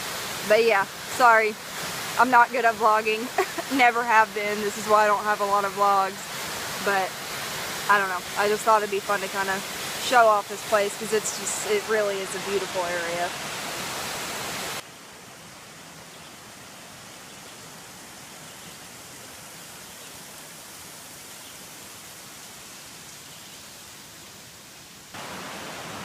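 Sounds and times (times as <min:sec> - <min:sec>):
creek water over rocks: 0:00.0 - 0:26.0.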